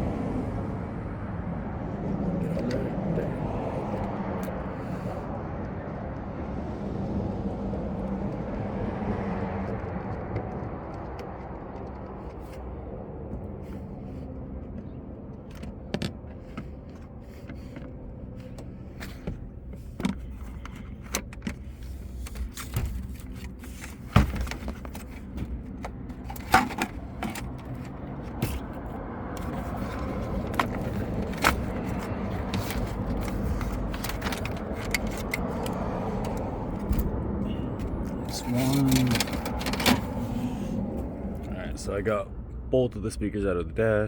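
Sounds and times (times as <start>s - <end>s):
steady low rumble: 0.0s - 44.0s
hand tools clicking and rattling: 18.4s - 28.8s, 29.4s - 37.1s, 37.8s - 40.2s.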